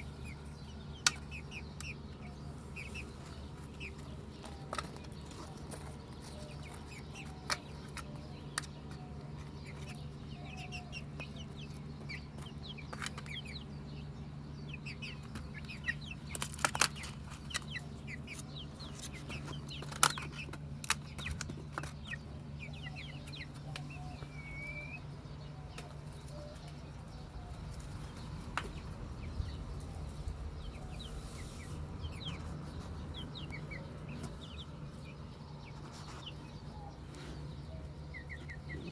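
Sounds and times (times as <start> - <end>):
chickens clucking: 0.0 - 38.9.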